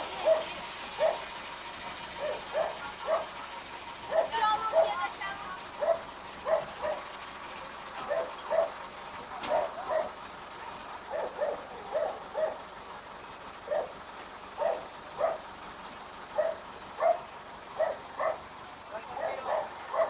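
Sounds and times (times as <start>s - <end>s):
dog barking: 0.2s - 1.3s, 2.2s - 3.4s, 4.1s - 5.0s, 5.8s - 7.1s, 8.0s - 8.8s, 9.4s - 10.2s, 11.1s - 12.6s, 13.6s - 13.9s, 14.6s - 15.4s, 16.4s - 18.4s, 19.2s - 20.0s.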